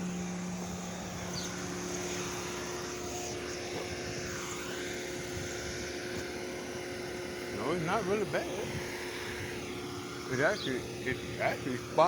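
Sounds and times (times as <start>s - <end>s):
low hum: 0.0s - 12.0s
car engine idling: 5.8s - 12.0s.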